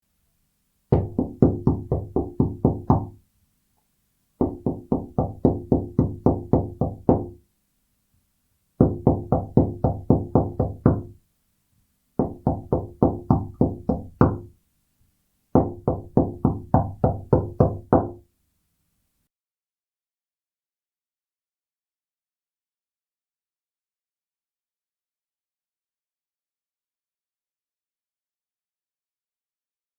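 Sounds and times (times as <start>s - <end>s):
knuckles knocking on wooden door: 0.9s - 3.2s, 4.4s - 7.4s, 8.8s - 11.2s, 12.2s - 14.5s, 15.6s - 18.2s.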